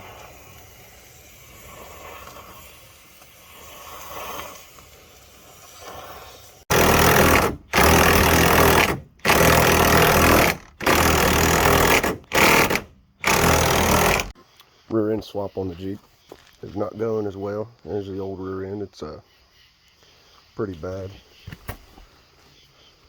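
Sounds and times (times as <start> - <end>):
power tool running: 6.7 - 14.4.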